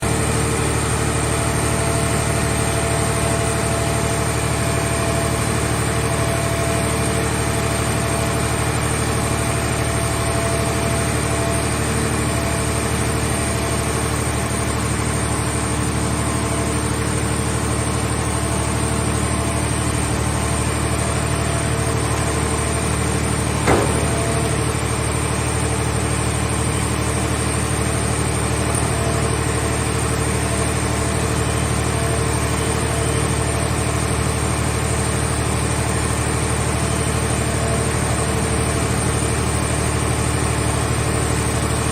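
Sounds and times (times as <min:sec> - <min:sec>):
machine power unit humming: 0:00.0 - 0:41.8
sharp knock: 0:23.6 - 0:24.7.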